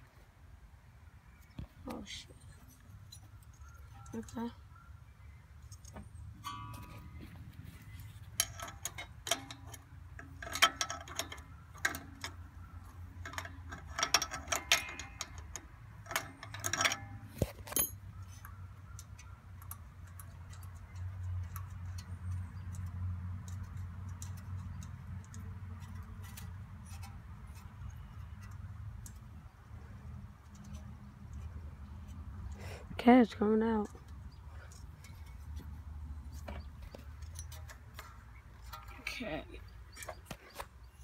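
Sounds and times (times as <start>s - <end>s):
hand tools clicking on metal: 8.2s - 29.5s.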